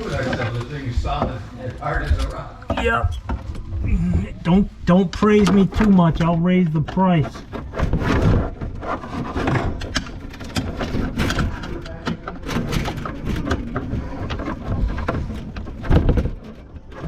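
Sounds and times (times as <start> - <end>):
tools and parts knocking: 5.0 - 17.0.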